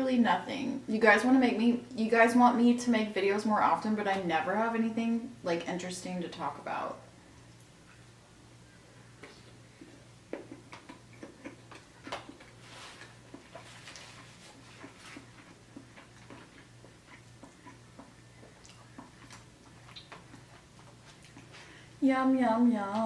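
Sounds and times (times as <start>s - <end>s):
crunchy chewing: 9.2s - 21.8s
wet mouth clicks: 10.3s - 12.6s, 15.8s - 21.5s.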